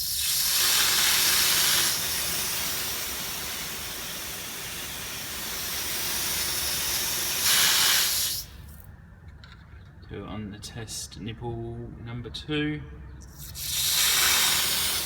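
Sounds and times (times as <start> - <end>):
water spraying with loud hiss: 0.0 - 8.8, 13.4 - 15.0.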